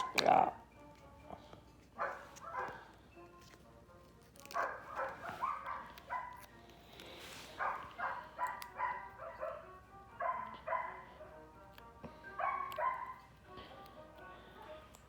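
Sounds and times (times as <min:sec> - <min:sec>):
dog barking: 0:02.0 - 0:03.0, 0:04.4 - 0:06.5, 0:07.6 - 0:11.4, 0:12.3 - 0:13.3.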